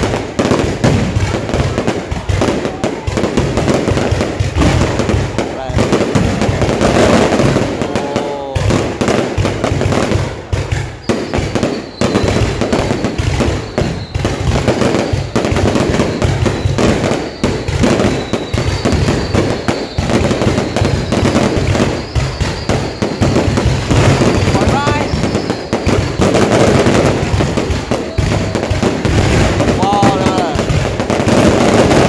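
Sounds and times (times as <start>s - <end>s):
firecrackers crackling and popping: 0.0s - 32.0s
faint high whistles: 11.0s - 14.5s.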